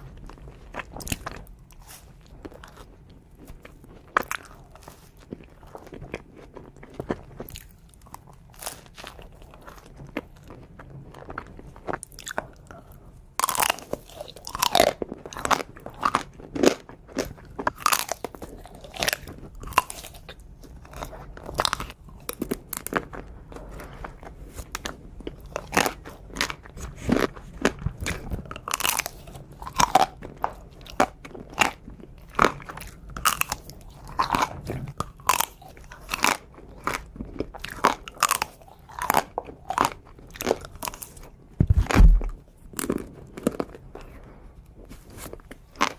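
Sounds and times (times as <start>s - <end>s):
person biting and chewing: 0.2s - 10.5s, 11.2s - 44.2s, 45.0s - 45.9s
sharp crunches: 37.6s - 43.6s.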